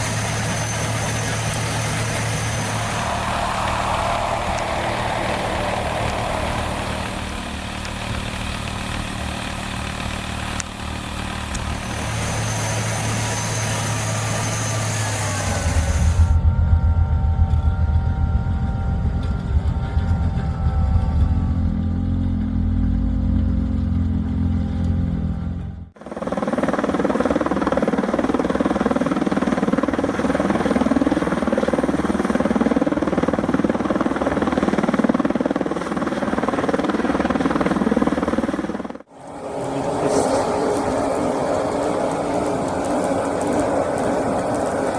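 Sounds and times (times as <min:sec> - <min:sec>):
deep engine rumble: 0:02.0 - 0:13.4, 0:15.2 - 0:26.0
busy machine noise: 0:02.5 - 0:14.7, 0:39.1 - 0:44.9.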